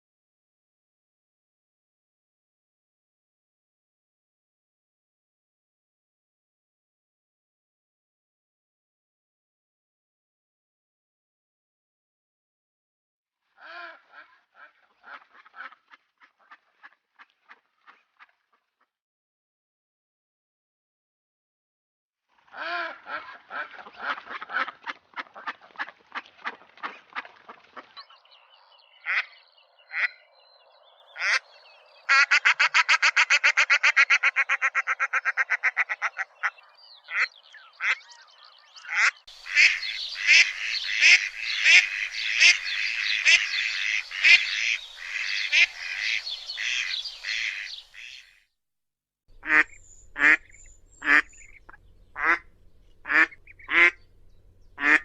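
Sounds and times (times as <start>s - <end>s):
ducks quacking: 13.6s - 18.4s, 22.5s - 28.1s, 28.9s - 30.2s, 31.1s - 48.4s, 49.4s - 54.1s, 54.8s - 55.0s.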